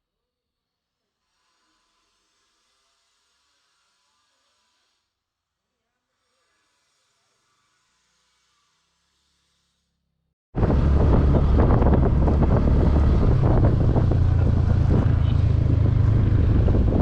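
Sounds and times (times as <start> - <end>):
vehicle engine drone: 10.6 - 17.0
wind buffeting microphone: 10.6 - 17.0.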